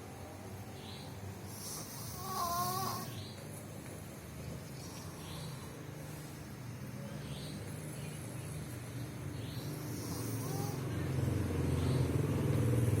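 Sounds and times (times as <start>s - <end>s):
person snoring: 1.5s - 3.1s, 9.8s - 10.9s.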